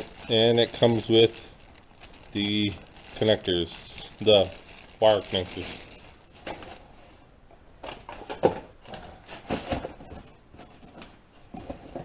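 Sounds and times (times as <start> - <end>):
plastic packaging rustling: 0.0 - 6.9.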